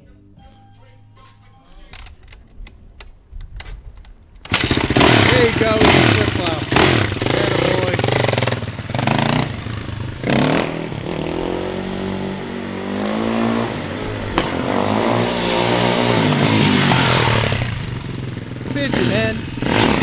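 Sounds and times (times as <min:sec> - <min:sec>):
engine revving: 0:04.5 - 0:20.0.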